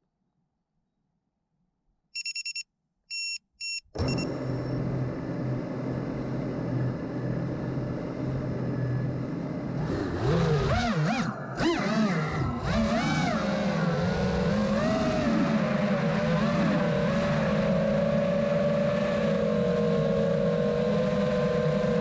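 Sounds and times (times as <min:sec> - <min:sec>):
electronic beeps: 0:02.2 - 0:04.3
drone propellers whining: 0:04.0 - 0:22.0.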